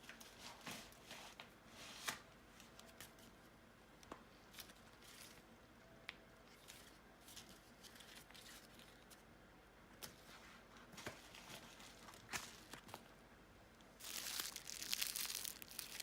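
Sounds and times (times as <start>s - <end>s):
package rustling: 11.3s - 13.0s, 14.0s - 16.0s.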